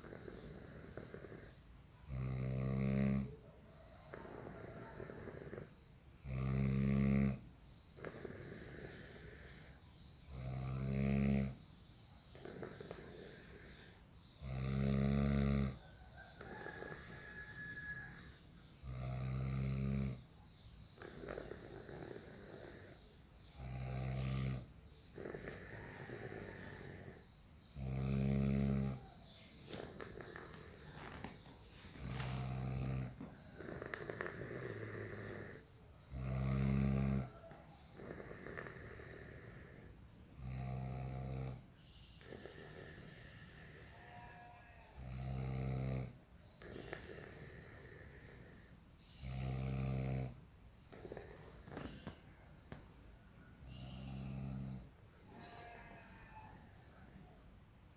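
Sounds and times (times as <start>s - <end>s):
breathy hissing breath: 0.0s - 1.8s, 3.8s - 5.9s, 7.7s - 10.2s, 12.2s - 14.5s, 15.8s - 18.8s, 20.6s - 36.0s, 37.2s - 40.5s, 41.7s - 44.5s, 46.4s - 57.9s
person snoring: 0.0s - 7.4s, 8.0s - 11.6s, 12.3s - 20.2s, 21.0s - 57.5s.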